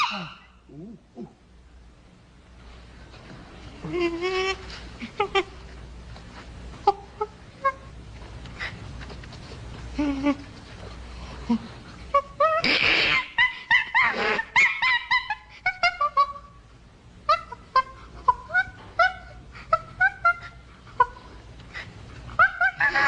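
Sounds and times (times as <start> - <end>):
chimpanzee screaming: 0.0 - 0.6, 12.2 - 16.5, 22.4 - 23.0
chimpanzee calling: 0.0 - 1.4, 11.5 - 16.6, 17.2 - 21.4, 22.3 - 23.0.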